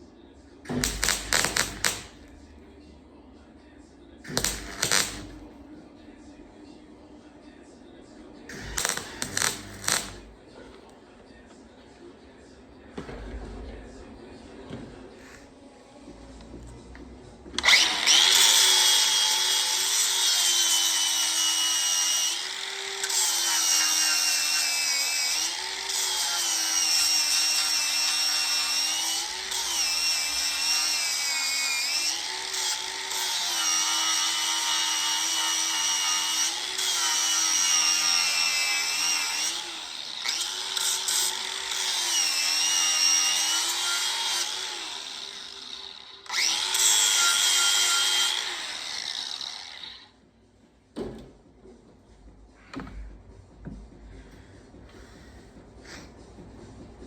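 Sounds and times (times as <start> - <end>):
angle grinder on steel: 0.8 - 2.2, 4.3 - 5.4, 8.5 - 10.3, 17.6 - 50.2.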